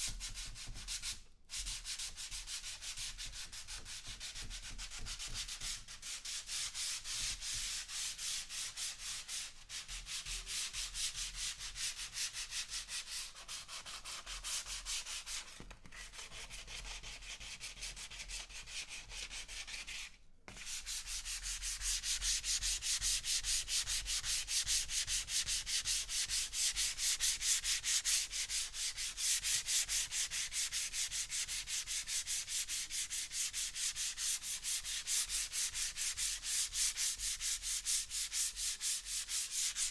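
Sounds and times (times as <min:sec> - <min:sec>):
sandpaper rubbing on wood: 0:19.6 - 0:39.9.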